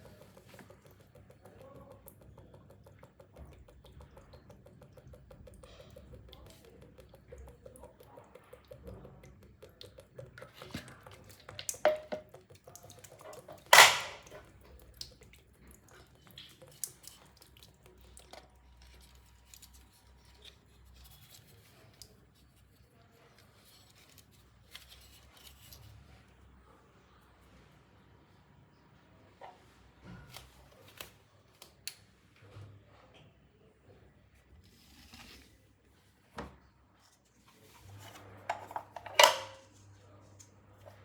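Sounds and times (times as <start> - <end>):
hand tools clicking and knocking: 13.7 - 14.4, 38.5 - 39.6.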